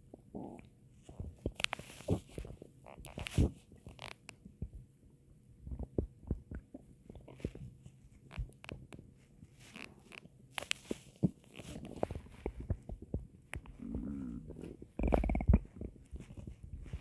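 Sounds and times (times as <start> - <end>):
stomach growling and gurgling: 0.0 - 4.8, 5.6 - 7.7, 11.2 - 17.0.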